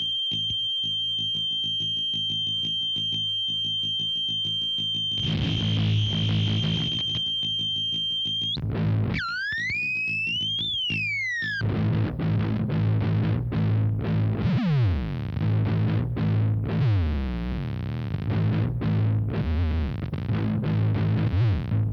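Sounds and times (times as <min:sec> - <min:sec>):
high electronic whistle: 0:00.0 - 0:11.6
distorted electronic buzzing drone: 0:00.0 - 0:21.9.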